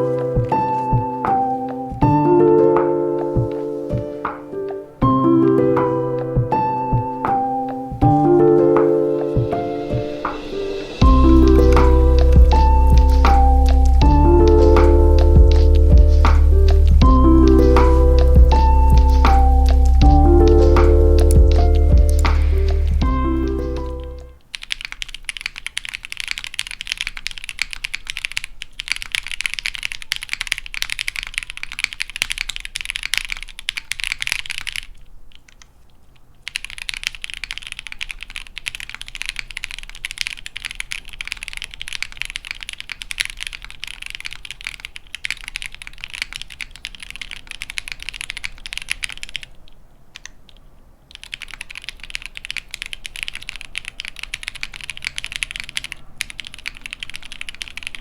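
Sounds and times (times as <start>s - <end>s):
typing on mechanical keyboard: 0.0s - 2.7s, 23.4s - 58.0s.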